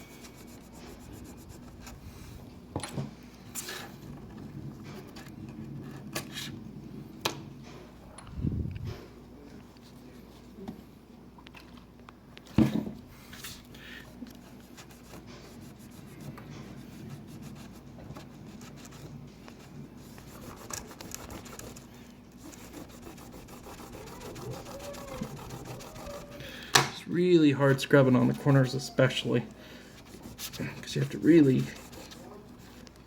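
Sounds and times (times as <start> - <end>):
rag rubbing and scraping: 14.6 - 26.4, 27.7 - 33.0.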